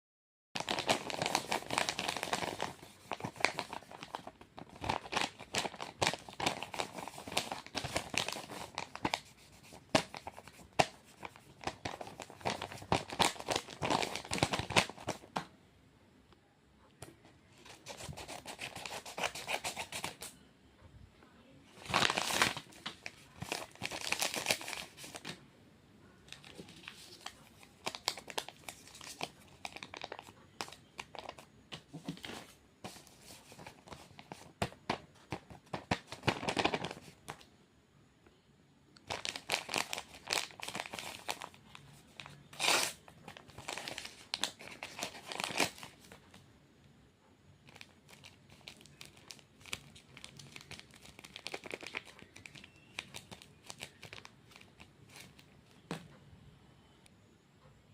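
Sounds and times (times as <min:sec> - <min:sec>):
packaging crinkling and tearing: 0:00.6 - 0:15.4, 0:21.8 - 0:25.4, 0:26.3 - 0:37.4, 0:39.0 - 0:46.2, 0:47.7 - 0:55.4.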